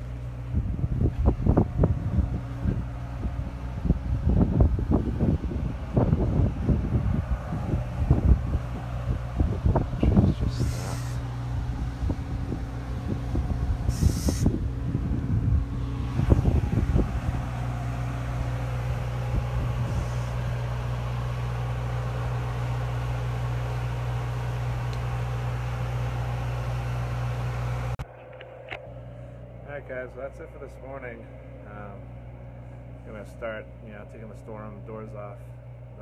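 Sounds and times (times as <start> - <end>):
engine running: 0.0 - 36.0
wind buffeting microphone: 0.4 - 20.9.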